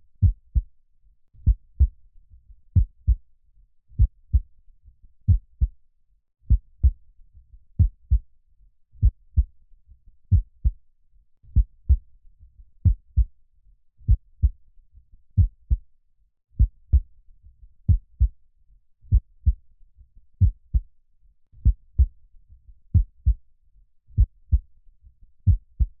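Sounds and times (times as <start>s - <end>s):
slow heartbeat: 0.2s - 0.7s, 1.4s - 2.0s, 2.7s - 3.2s, 4.0s - 4.5s, 5.3s - 5.7s, 6.5s - 7.0s, 7.8s - 8.2s, 9.0s - 9.5s, 10.3s - 10.8s, 11.5s - 12.0s, 12.8s - 13.3s, 14.1s - 14.6s, 15.4s - 15.8s, 16.6s - 17.1s, 19.1s - 19.6s, 20.4s - 20.9s, 21.6s - 22.2s, 22.9s - 23.4s, 24.2s - 24.7s, 25.4s - 26.0s.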